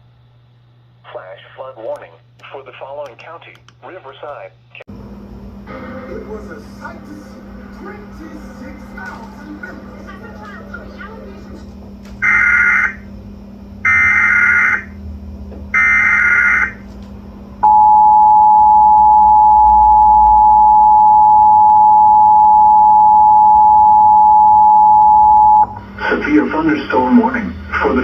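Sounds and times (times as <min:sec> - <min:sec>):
two-tone attention signal: 0:12.2 - 0:13.0, 0:13.9 - 0:14.9, 0:15.8 - 0:16.8, 0:17.6 - 0:25.8.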